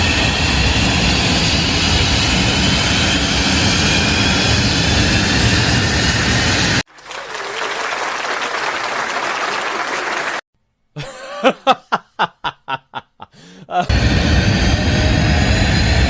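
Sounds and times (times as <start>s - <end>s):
airliner engine noise: 0.0s - 6.8s, 13.7s - 16.0s
applause: 6.9s - 10.4s
quick laughter: 11.0s - 13.9s.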